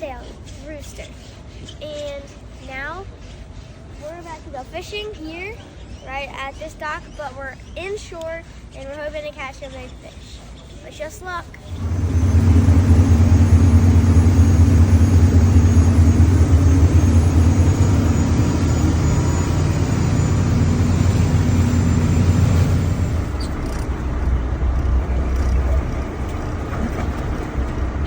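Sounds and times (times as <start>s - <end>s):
boat motor running: 11.5s - 28.0s.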